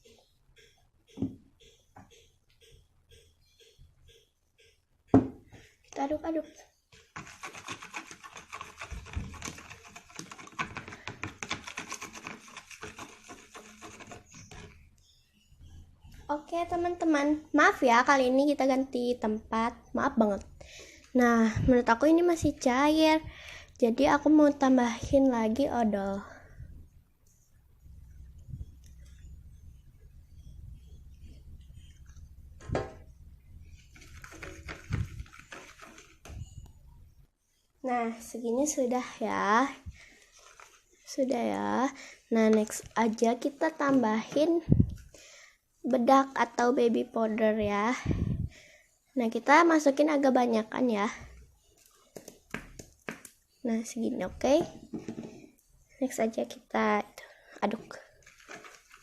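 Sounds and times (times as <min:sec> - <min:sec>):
utensil stirring thick mixture: 0:06.9 - 0:15.3, 0:33.7 - 0:36.6, 0:39.9 - 0:41.7, 0:51.3 - 0:53.6, 0:57.9 - 0:59.0
steady low hum: 0:26.2 - 0:34.2.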